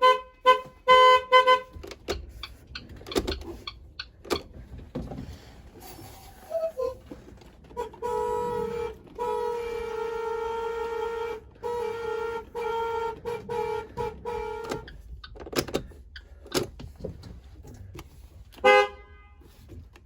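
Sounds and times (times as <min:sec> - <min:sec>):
bus horn blasts and toots: 0:00.0 - 0:02.5, 0:06.4 - 0:15.3, 0:18.5 - 0:19.9.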